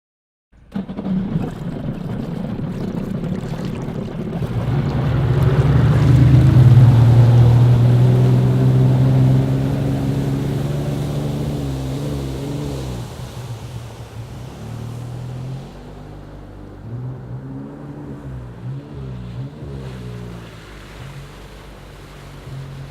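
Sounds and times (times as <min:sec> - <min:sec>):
jet ski engine droning: 0:00.6 - 0:22.9.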